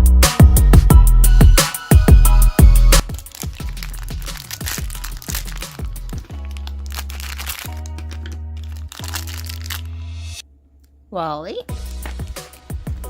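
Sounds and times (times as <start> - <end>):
electronic music with bass: 0.0 - 6.3.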